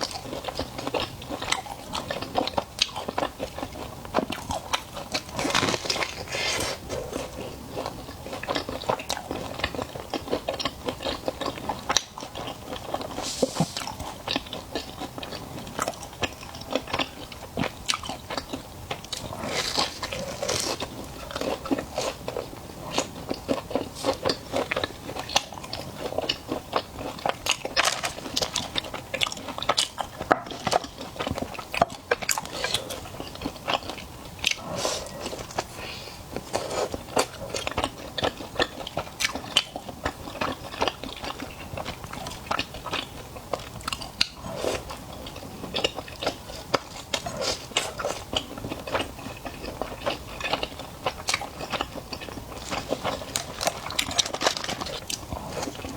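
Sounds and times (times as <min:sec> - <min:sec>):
person chewing food: 0:00.0 - 0:55.9
crisp crunches: 0:04.4 - 0:07.5, 0:19.0 - 0:25.6, 0:51.8 - 0:55.9.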